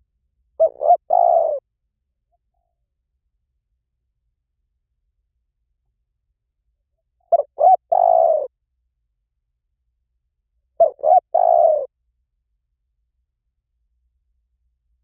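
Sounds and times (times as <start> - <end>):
dove cooing: 0.6 - 1.6, 7.3 - 8.5, 10.8 - 11.9.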